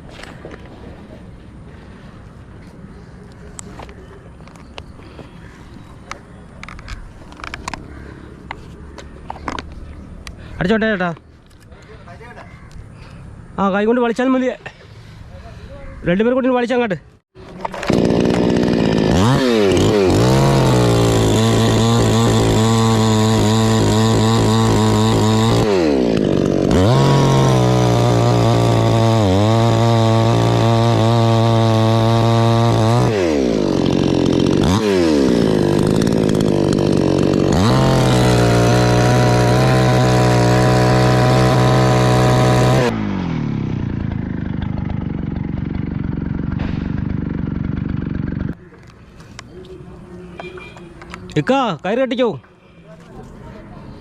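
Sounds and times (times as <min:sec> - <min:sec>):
chainsaw cutting wood: 0:17.4 - 0:48.6.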